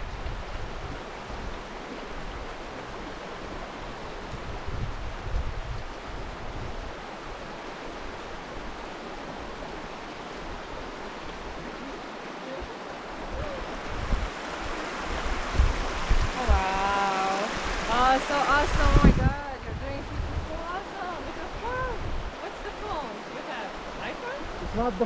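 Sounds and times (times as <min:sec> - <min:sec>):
creek water rushing: 0:00.0 - 0:25.0
low rumbling bumps: 0:17.7 - 0:22.4.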